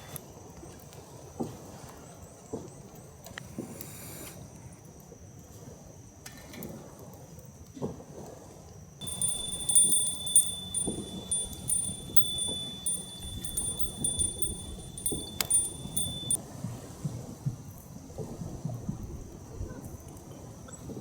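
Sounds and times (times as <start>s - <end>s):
wind chime ringing: 9.0s - 16.4s.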